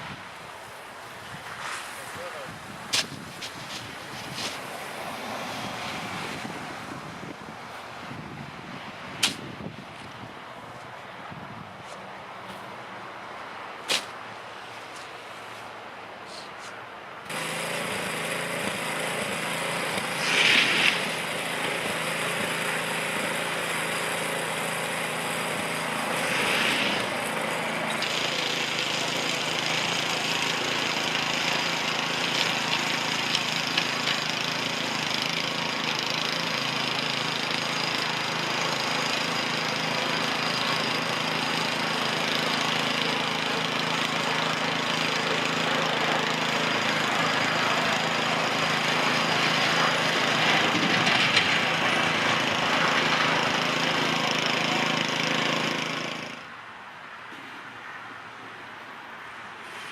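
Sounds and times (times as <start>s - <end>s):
engine running steadily: 17.2s - 56.5s.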